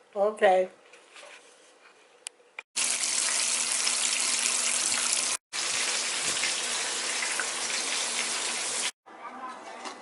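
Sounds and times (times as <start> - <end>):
water running from tap: 2.8 - 9.0.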